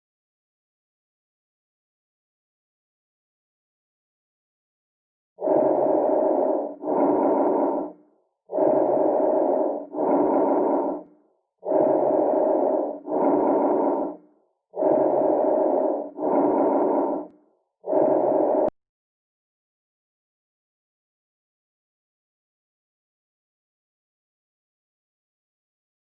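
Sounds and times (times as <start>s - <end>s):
lung breathing sounds: 5.4s - 18.8s.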